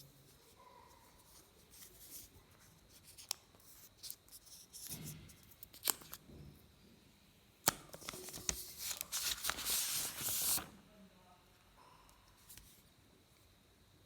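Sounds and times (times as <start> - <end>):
sharp clicks of packaging: 7.6 - 10.7
plastic wrap rustling: 8.0 - 10.8.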